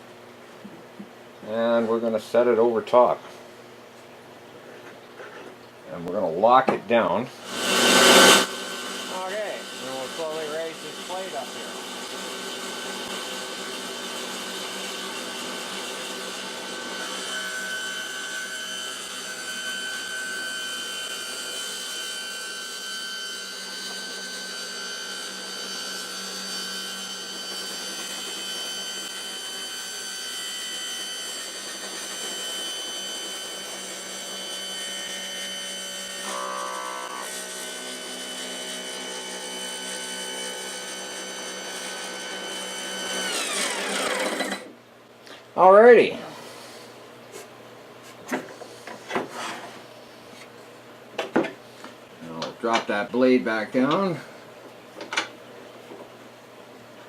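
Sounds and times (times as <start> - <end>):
table saw running: 7.4 - 44.7.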